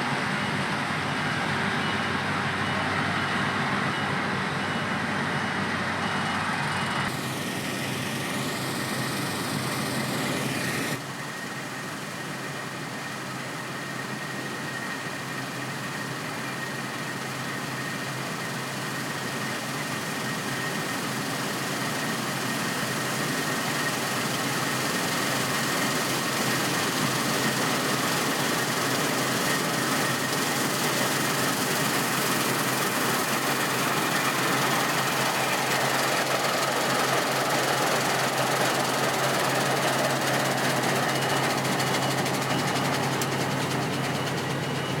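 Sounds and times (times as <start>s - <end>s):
combine harvester running: 0.0s - 45.0s
thin high whine: 0.2s - 11.4s, 27.0s - 45.0s.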